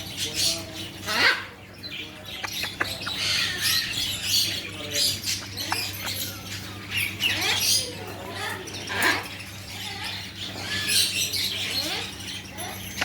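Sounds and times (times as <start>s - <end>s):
birds chirping and squawking: 0.0s - 13.0s.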